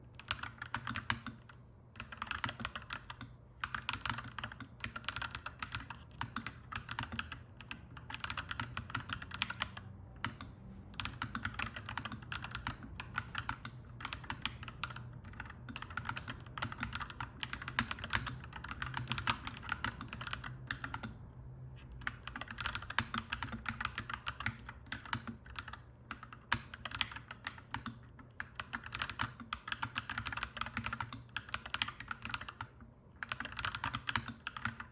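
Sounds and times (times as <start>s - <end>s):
steady low hum: 0.0s - 26.8s
mechanical keyboard typing: 0.1s - 21.2s, 21.8s - 34.9s.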